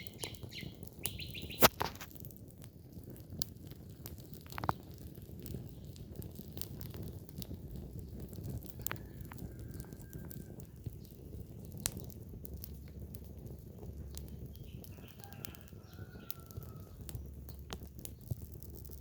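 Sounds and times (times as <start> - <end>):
bird chirping: 0.0 - 1.7
wood fire crackling and popping: 0.0 - 19.0.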